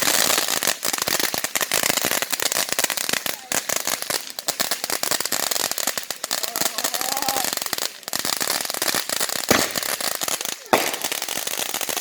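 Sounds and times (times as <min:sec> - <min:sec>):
fireworks crackling: 0:00.0 - 0:12.0
firework bang: 0:09.4 - 0:12.0.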